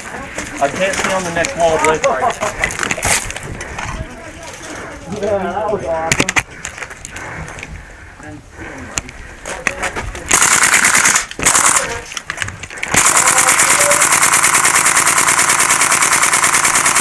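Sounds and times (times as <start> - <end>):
airsoft rifle full auto fire: 10.3 - 12.0, 12.9 - 17.0.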